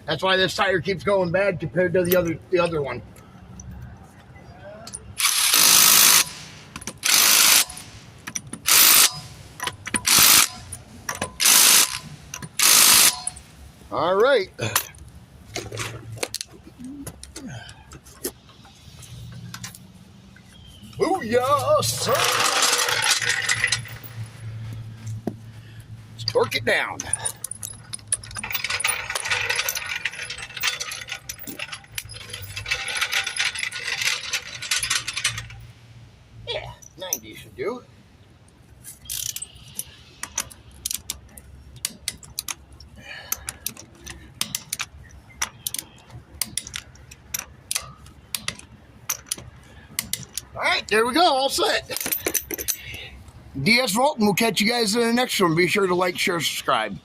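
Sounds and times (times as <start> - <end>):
power wrench buzzing: 5.2 - 13.4, 21.8 - 24.2, 27.9 - 35.6
metallic clinks: 20.4 - 25.2, 26.2 - 35.7, 51.9 - 53.1.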